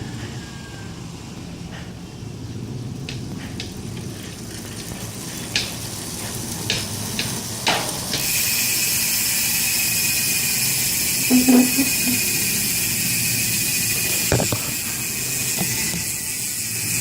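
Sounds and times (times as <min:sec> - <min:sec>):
bicycle hub clicks: 0:03.1 - 0:10.6.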